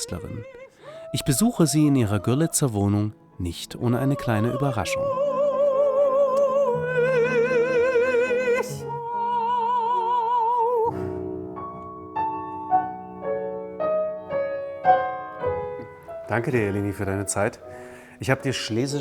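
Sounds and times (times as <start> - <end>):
soprano singing with vibrato: 0.0 - 11.2
piano accompaniment: 0.0 - 19.0.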